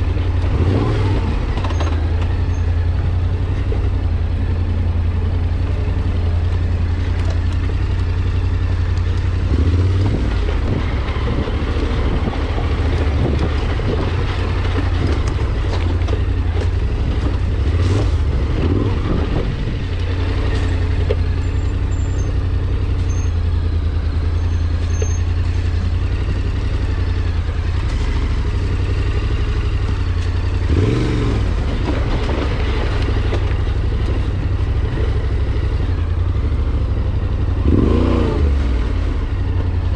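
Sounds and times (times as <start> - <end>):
vehicle engine running at low revs: 0.0 - 39.9
vehicle knocks and rattles: 5.7 - 23.5, 24.3 - 35.8.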